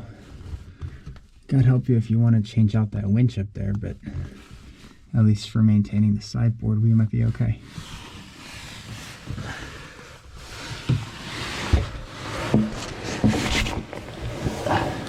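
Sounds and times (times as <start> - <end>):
steady rustling hiss: 7.2 - 15.0.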